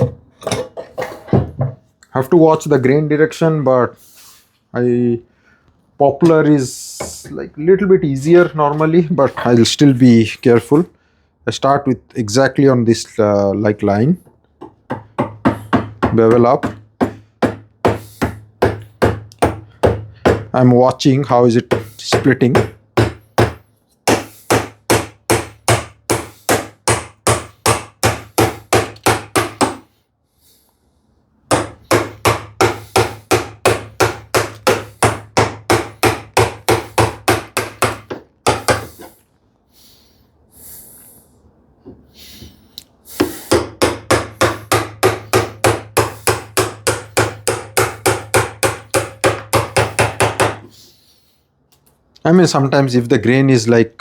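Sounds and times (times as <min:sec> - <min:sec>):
chisel struck into wood: 0:14.6 - 0:20.5, 0:21.7 - 0:29.8, 0:31.5 - 0:39.1, 0:43.2 - 0:50.7.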